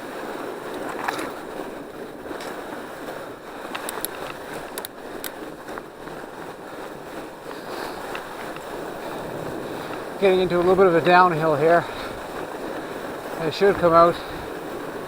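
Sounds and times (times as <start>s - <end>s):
wind on microphone: 0.0s - 15.0s
bike clicks and rattles: 3.6s - 5.9s
tyres rushing on snow: 4.4s - 15.0s.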